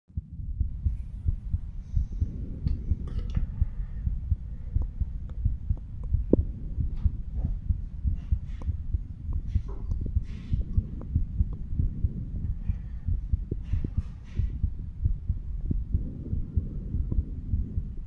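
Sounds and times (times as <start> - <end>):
heartbeat through stethoscope: 0.1 - 18.0
faint clicks: 4.3 - 12.8.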